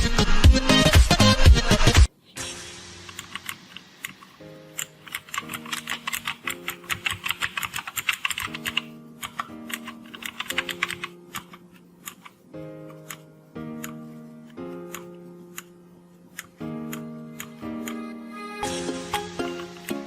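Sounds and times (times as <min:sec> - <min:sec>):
clicky keyboard typing: 0:03.1 - 0:14.0.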